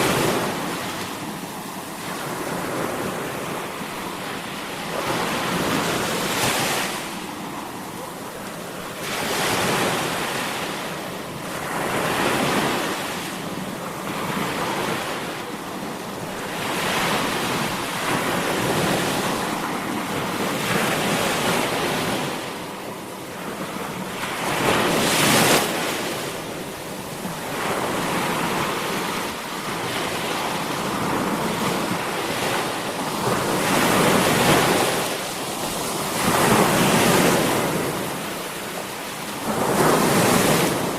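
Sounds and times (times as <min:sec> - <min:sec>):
sea waves breaking on shore: 0:00.0 - 0:40.9.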